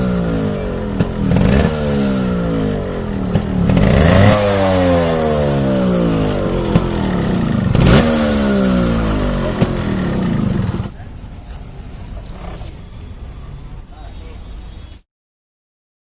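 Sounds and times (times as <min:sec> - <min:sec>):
motorcycle engine revving: 0:00.0 - 0:11.0.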